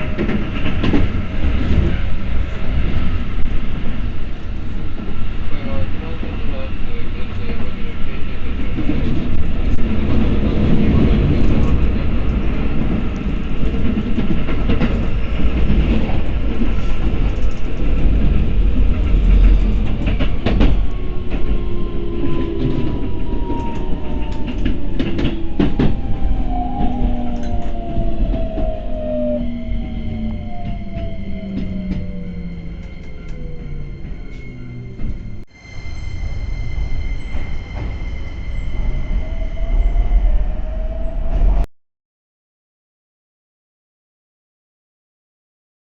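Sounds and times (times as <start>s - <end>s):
rail-joint clacks: 0.0s - 3.9s, 8.5s - 35.4s
train wheels rumbling on rail: 0.0s - 41.6s
electric train motor whine: 20.8s - 37.9s.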